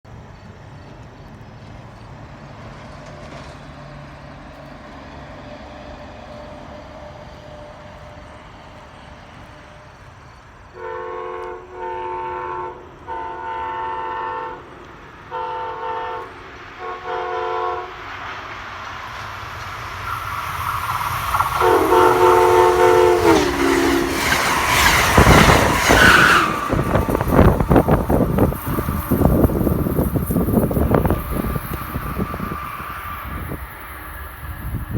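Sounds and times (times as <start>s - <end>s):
train rushing and clattering past: 0.1s - 12.0s, 12.8s - 34.9s
train horn blasts: 10.7s - 18.1s, 21.3s - 33.5s.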